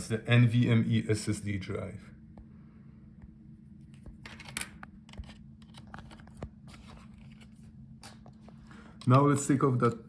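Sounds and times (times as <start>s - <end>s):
steady low hum: 0.0s - 10.0s
clicks and scrapes of small parts: 3.9s - 8.4s.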